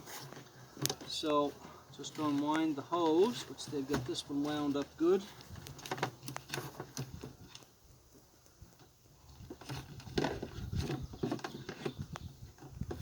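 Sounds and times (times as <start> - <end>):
hose plastic clicks and knocks: 0.2 - 1.2, 3.6 - 7.7.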